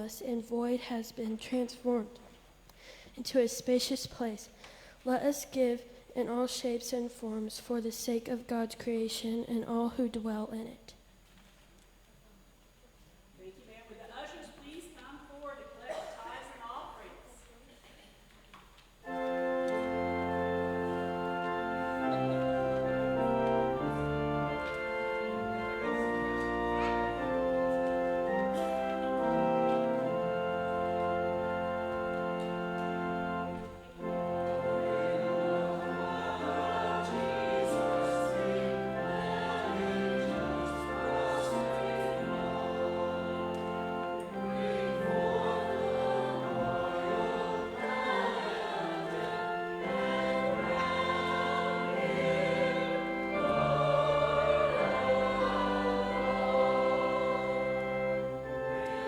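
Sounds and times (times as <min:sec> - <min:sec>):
choir singing sustained chords: 0:19.0 - 0:59.0
organ accompaniment: 0:19.0 - 0:59.0.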